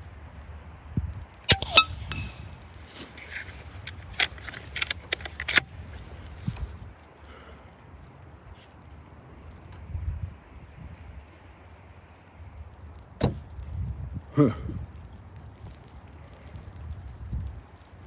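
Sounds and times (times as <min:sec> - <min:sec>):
air rifle shot: 0:01.5 - 0:02.6
sharp mechanical clicks: 0:03.4 - 0:05.8.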